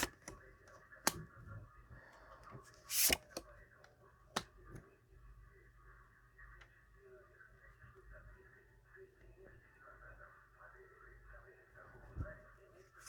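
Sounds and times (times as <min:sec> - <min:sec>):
cards sliding swish: 0:02.9 - 0:03.4.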